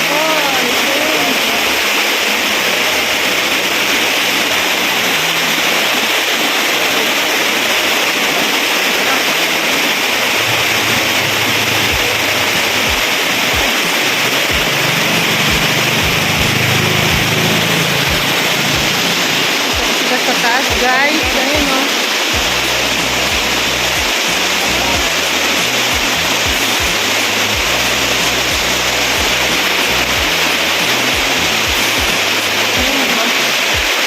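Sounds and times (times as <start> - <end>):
waterfall rushing and splashing: 0.0 - 34.0
short low thumps: 14.4 - 19.9.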